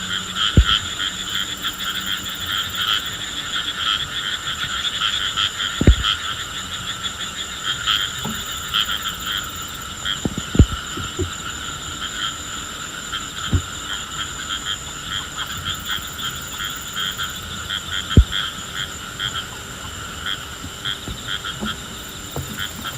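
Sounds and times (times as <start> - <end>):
frogs trilling: 0.0 - 22.9
dull low thumps: 0.6 - 0.8.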